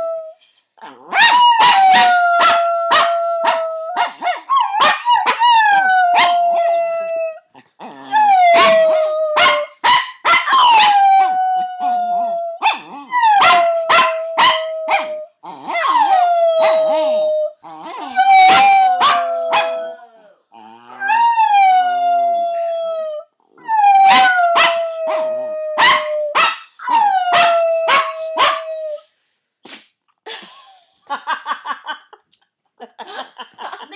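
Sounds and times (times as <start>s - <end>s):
dog howling: 8.0s - 9.7s, 10.6s - 29.0s.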